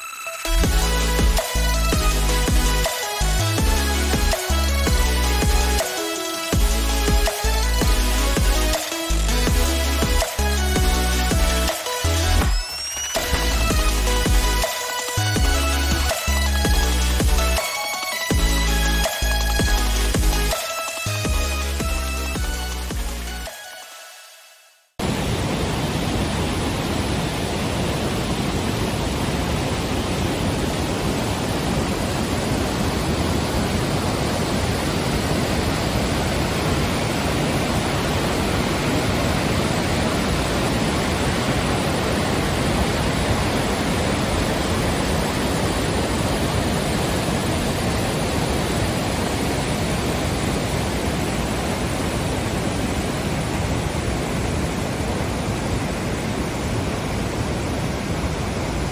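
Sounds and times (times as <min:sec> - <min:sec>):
waterfall rushing: 0:25.0 - 0:58.9.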